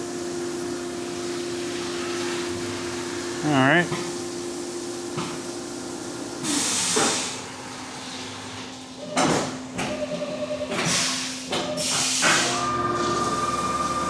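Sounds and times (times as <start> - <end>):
cnc mill spindle tone: 12.5 - 14.0.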